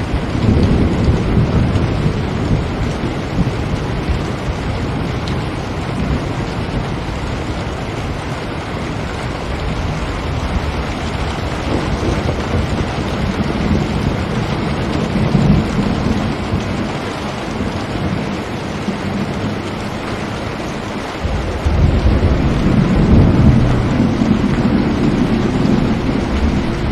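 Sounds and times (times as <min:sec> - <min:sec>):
rain on a window: 0:00.0 - 0:26.9
low rumble: 0:20.8 - 0:26.9.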